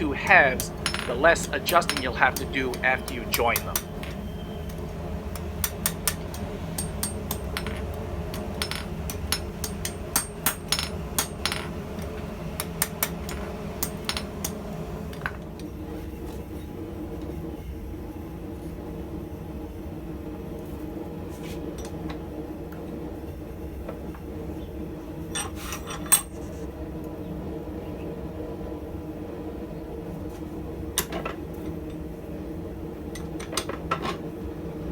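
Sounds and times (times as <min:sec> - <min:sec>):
hammer striking steel on anvil: 0:00.0 - 0:15.4
steady low hum: 0:00.0 - 0:25.3.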